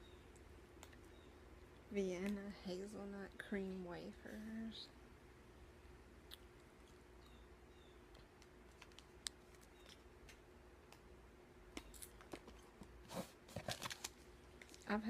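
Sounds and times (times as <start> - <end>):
faint steady hum: 0.0 - 15.0
snack packets rustling: 11.8 - 14.9.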